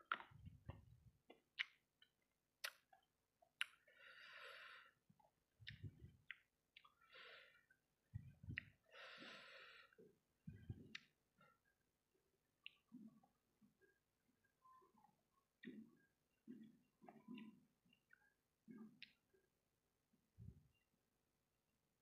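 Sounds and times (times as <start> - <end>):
soft low thumps: 0.1 - 1.2, 5.6 - 6.3, 8.1 - 8.7, 10.4 - 11.0
wet mouth chewing clicks: 1.3 - 1.8, 2.6 - 3.8, 5.6 - 7.0
long breaths: 3.9 - 5.0, 8.9 - 10.0.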